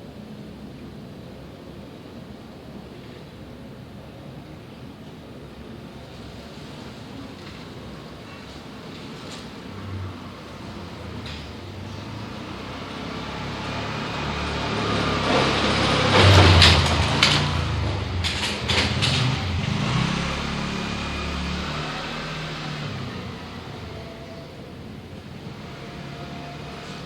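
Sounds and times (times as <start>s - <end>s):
motor vehicle passing: 9.7s - 27.0s.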